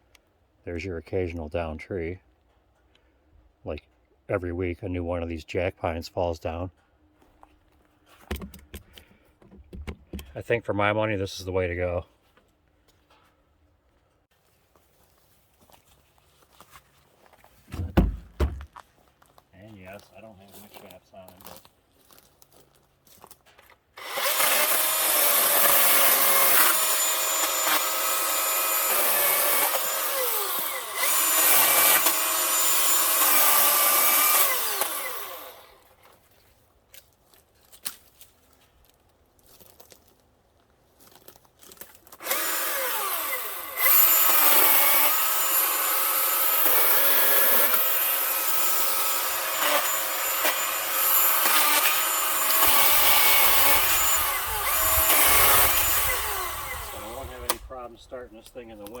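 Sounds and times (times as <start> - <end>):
battery chainsaw cutting wood: 17.7 - 18.7, 24.0 - 36.0, 42.1 - 57.8.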